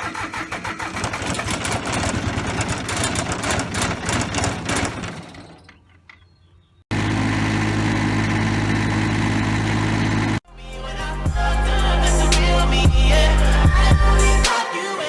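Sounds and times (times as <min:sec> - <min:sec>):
diesel tractor engine running roughly: 0:00.0 - 0:06.0, 0:06.9 - 0:10.4.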